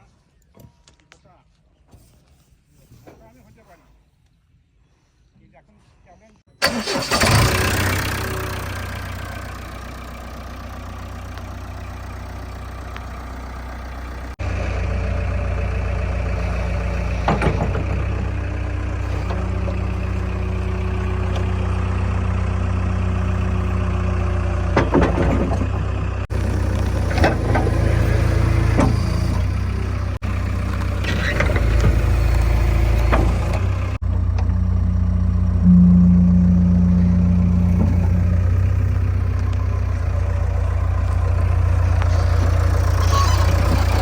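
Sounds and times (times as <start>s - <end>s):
diesel engine running: 6.6s - 44.0s
sharp knocks and clanks: 24.8s - 25.9s.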